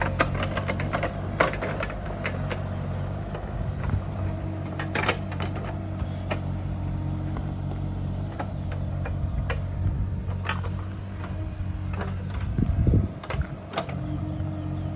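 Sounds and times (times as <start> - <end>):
machine knocks and clanks: 0.0 - 2.7
excavator diesel engine running: 0.0 - 14.9.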